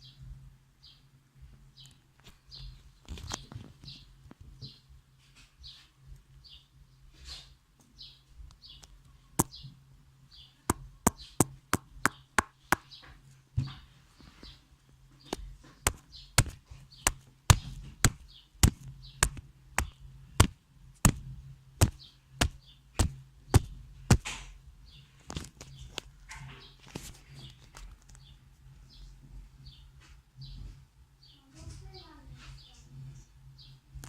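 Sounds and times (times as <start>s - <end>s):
steady low hum: 14.8s - 24.9s.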